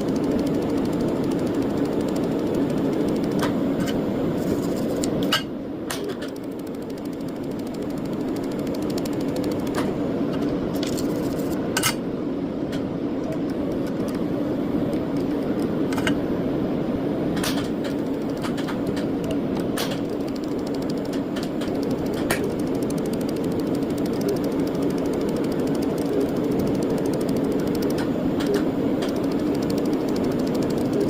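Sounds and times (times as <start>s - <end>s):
sharp clicks: 0.0s - 4.0s, 5.9s - 9.9s, 17.4s - 31.0s
workshop machine humming: 0.0s - 31.0s.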